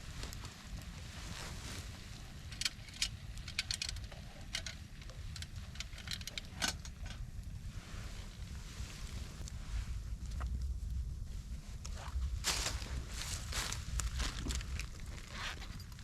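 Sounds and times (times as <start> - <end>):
wind rumble on microphone: 0.0 - 16.0
sharp clicks and crackles: 2.3 - 7.5.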